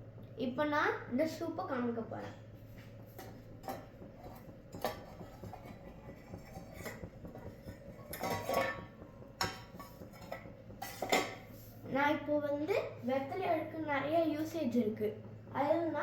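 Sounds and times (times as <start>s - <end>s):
steady low hum: 0.0s - 16.0s
dishes and utensils clinking: 3.2s - 11.5s.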